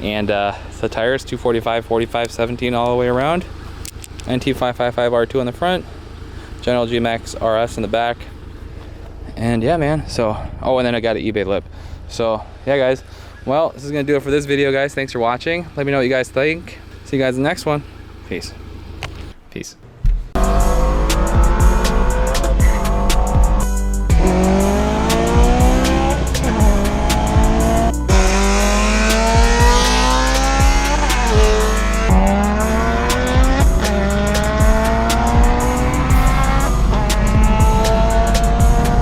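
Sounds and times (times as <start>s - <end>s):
car engine accelerating: 17.8s - 39.0s
music with heavy beat: 20.1s - 39.0s.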